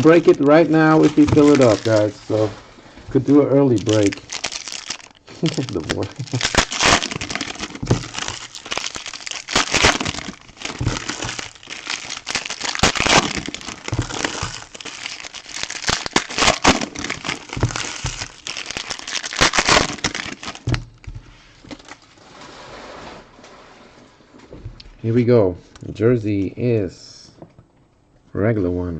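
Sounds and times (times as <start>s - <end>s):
plastic wrapping crinkling: 0.0s - 22.5s.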